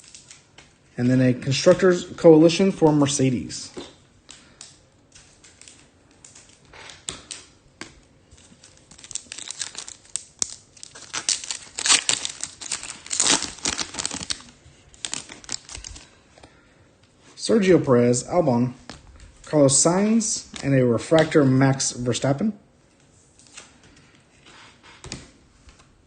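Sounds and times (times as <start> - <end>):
foil wrapper tearing and crinkling: 8.4 - 16.1.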